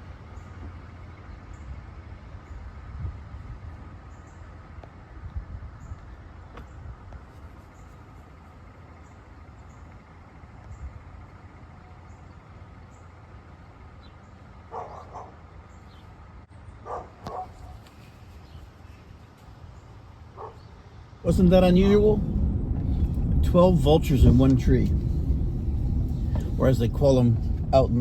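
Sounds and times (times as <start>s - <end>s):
low outdoor rumble: 0.0s - 28.0s
bark-like animal calls: 14.7s - 15.4s, 16.8s - 17.8s, 20.3s - 20.7s.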